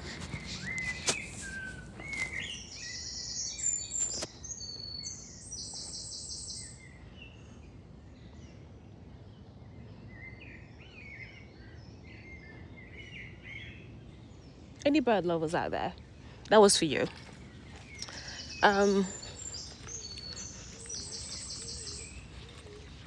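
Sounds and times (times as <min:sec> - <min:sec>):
bird rapid high song: 0:00.0 - 0:07.0, 0:15.2 - 0:23.0
birds chirping faintly: 0:00.0 - 0:07.6, 0:12.6 - 0:23.0.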